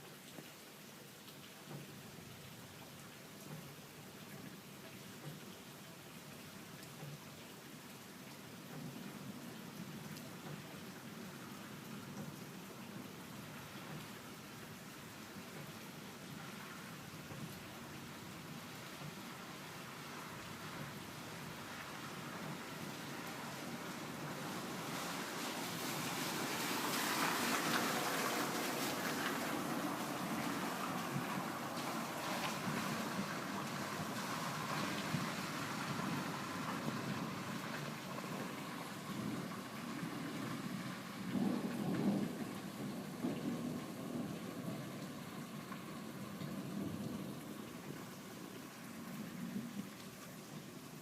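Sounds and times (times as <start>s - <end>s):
rain: 0.0s - 51.0s
thunder rumbling: 39.1s - 47.6s.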